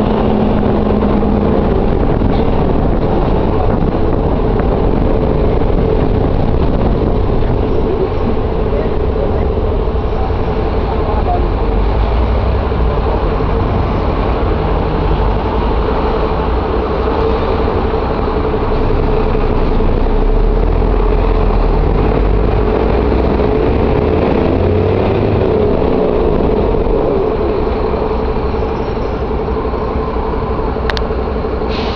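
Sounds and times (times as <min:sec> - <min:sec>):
bus engine running: 0:00.0 - 0:31.9.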